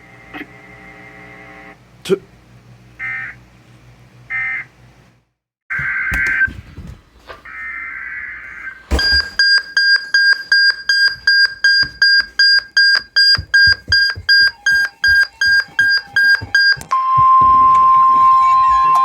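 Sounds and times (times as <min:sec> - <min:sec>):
rapid electronic beeps: 0:08.9 - 0:19.0
steady attention tone: 0:08.9 - 0:19.0.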